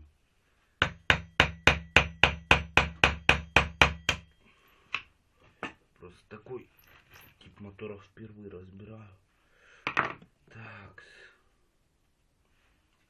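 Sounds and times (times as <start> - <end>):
hammer striking metal: 0.8 - 4.4.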